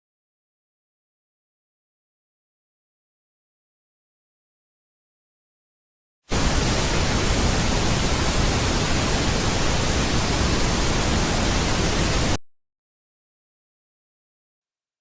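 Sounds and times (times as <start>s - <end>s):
loud static hiss: 6.3s - 12.4s.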